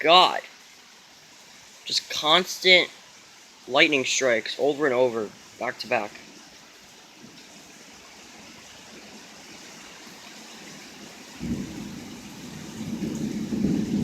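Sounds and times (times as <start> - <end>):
heavy rain hissing: 0.0 - 14.0
low rumble of thunder: 11.4 - 14.0.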